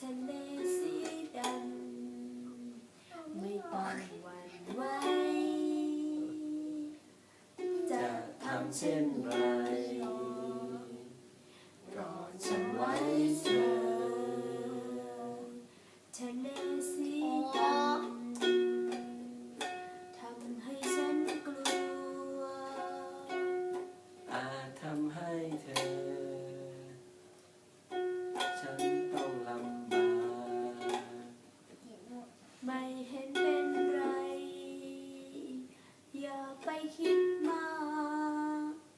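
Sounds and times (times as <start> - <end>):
plucked string instrument: 0.5 - 2.4, 7.6 - 11.2, 11.9 - 15.6, 16.4 - 27.2, 27.9 - 31.4, 33.3 - 34.6
person singing sliding notes: 7.6 - 11.2, 11.9 - 23.5.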